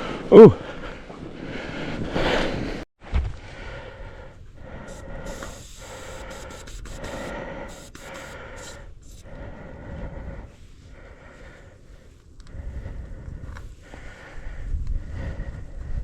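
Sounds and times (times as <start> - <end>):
rider breathing hard: 0.0 - 16.0
bike riding noise: 4.6 - 9.6.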